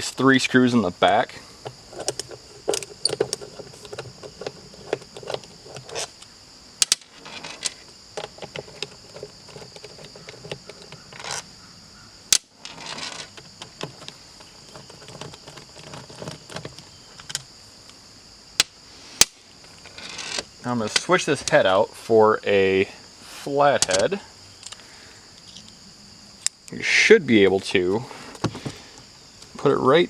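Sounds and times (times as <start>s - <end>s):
high-pitched insect buzz: 0.9s - 20.7s, 24.3s - 26.7s
screwdriver clicking and scraping: 1.6s - 6.2s.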